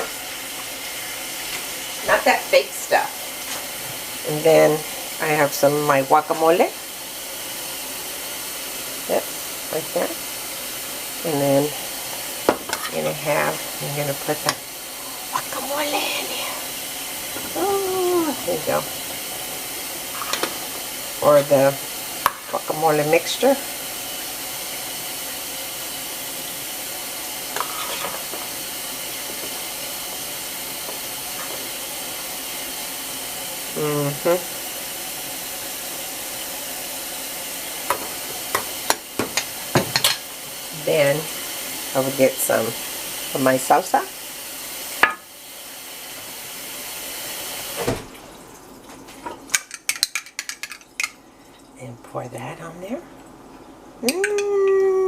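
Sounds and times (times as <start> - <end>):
utensil clinking against dishes: 49.5 - 51.7.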